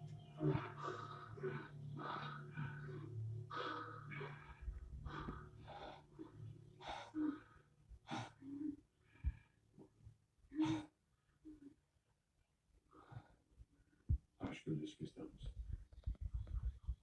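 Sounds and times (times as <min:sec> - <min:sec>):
ragged breathing gasps and wheezes: 0:00.0 - 0:11.8, 0:12.8 - 0:14.4.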